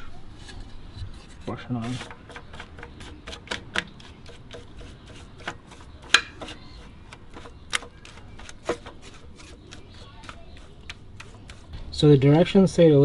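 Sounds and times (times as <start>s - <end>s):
brush clicking and tapping: 1.8s - 11.8s.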